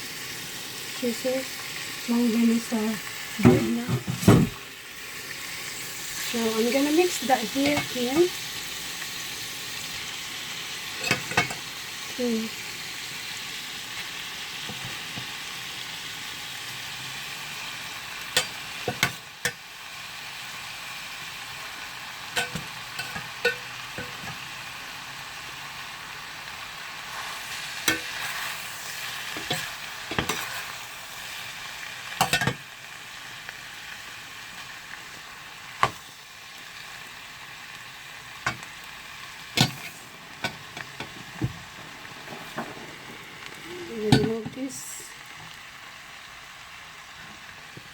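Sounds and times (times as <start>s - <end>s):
food sizzling in a frying pan: 0.0s - 47.9s
utensil clinking against pan: 22.4s - 24.3s.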